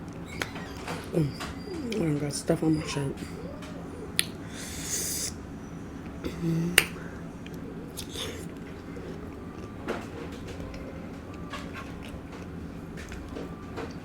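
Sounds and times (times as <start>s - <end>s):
lip smacks and mouth clicks: 4.1s - 5.4s, 6.8s - 9.8s
person humming: 6.2s - 7.2s.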